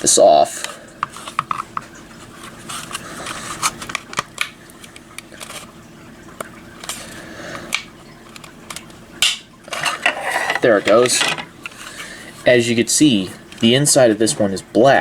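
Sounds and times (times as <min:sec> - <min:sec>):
plastic clicks and scrapes: 0:00.6 - 0:05.7, 0:06.8 - 0:08.9, 0:09.6 - 0:12.1.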